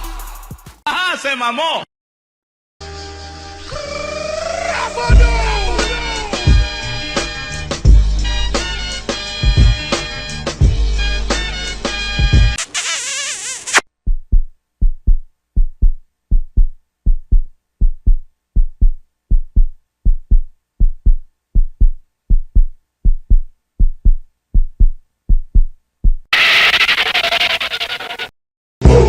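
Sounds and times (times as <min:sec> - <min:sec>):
music: 0:00.0 - 0:00.8, 0:02.8 - 0:04.2, 0:04.8 - 0:12.6
heartbeat thumps: 0:09.4 - 0:09.9, 0:14.0 - 0:26.3.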